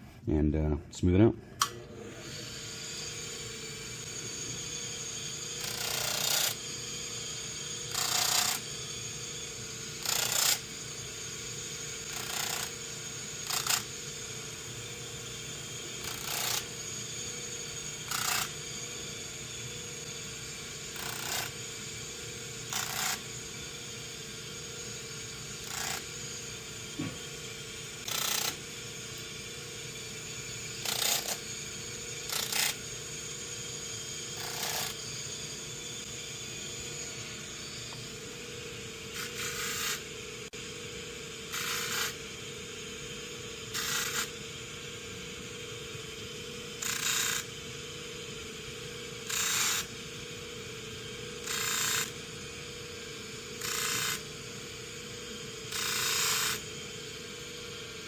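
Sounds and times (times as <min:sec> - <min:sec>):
buffing wheel motor hum: 0:01.6 - 0:40.7
metal rasping on buffing wheel: 0:20.9 - 0:21.6, 0:25.5 - 0:26.4, 0:30.7 - 0:31.5, 0:34.3 - 0:35.2.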